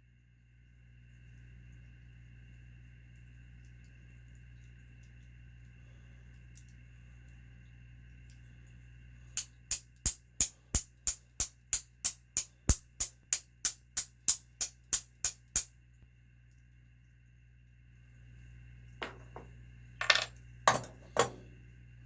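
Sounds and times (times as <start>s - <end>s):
sharp tapping on metal pin: 9.4s - 15.7s.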